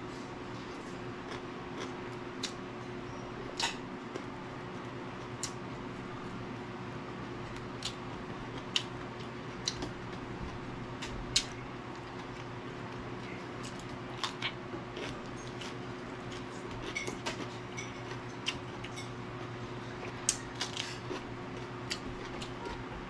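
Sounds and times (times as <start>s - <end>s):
steady low hum: 0.0s - 23.0s
chewing crunchy vegetables: 0.6s - 2.6s, 7.3s - 23.0s.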